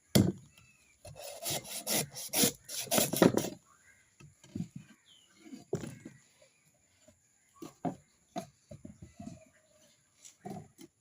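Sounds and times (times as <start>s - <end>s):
coconut being scraped: 1.1s - 3.6s.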